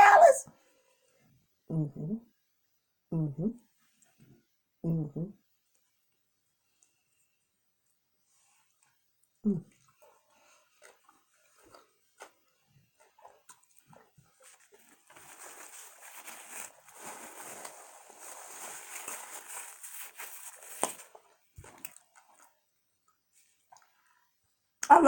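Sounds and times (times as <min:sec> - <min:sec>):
rustling crackling noise: 0:13.0 - 0:22.6.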